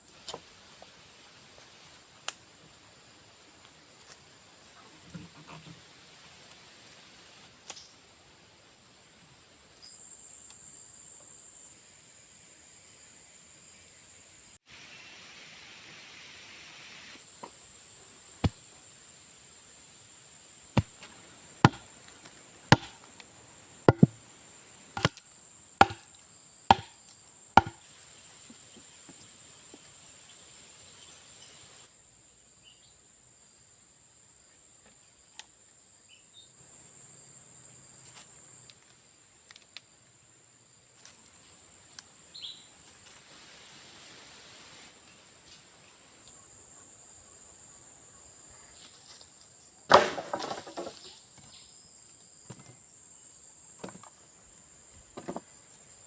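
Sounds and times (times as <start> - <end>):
chopping wood: 20.8 - 21.9, 22.7 - 23.1, 23.9 - 24.2, 25.0 - 25.2, 25.8 - 27.0, 27.6 - 27.8, 49.9 - 51.0.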